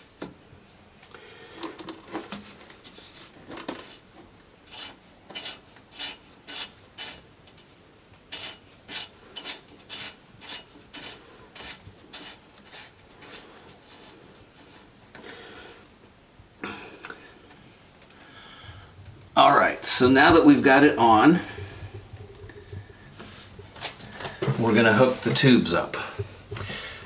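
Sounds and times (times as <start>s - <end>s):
plastic rubbing on plastic: 1.6s - 15.0s, 18.9s - 27.0s.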